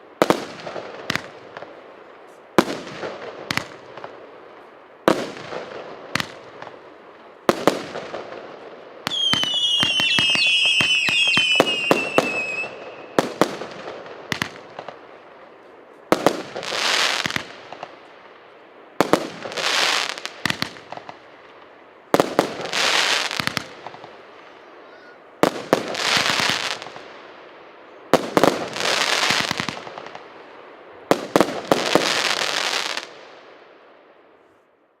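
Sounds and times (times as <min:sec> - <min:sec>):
crackling firework bursts: 0:00.0 - 0:34.4
fireworks bangs: 0:00.2 - 0:24.8, 0:25.4 - 0:27.4, 0:28.1 - 0:33.6
falling firework whistles: 0:09.0 - 0:13.4.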